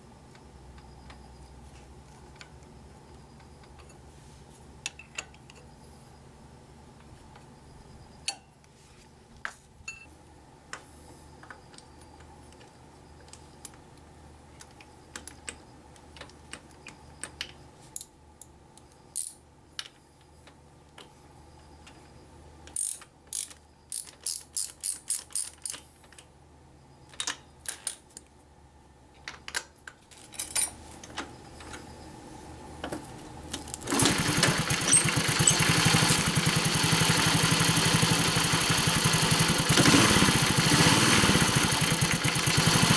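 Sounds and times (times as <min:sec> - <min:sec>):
ratchet clicks: 0:22.7 - 0:25.8, 0:33.9 - 0:42.9
small motorcycle engine idling: 0:33.8 - 0:42.9.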